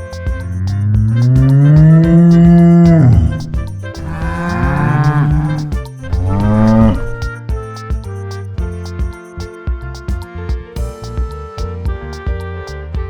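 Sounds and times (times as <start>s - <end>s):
background music: 0.0s - 13.0s
cattle mooing: 1.4s - 7.2s.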